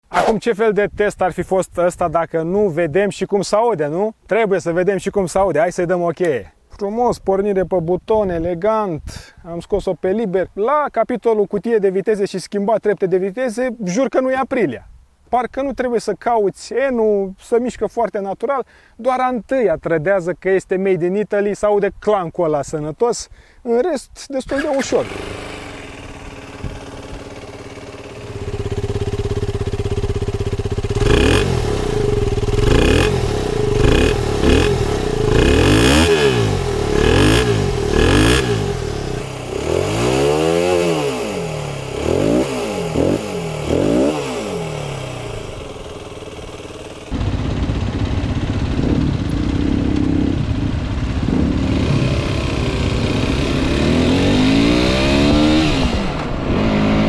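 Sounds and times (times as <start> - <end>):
motorcycle engine revving: 24.5 - 57.0.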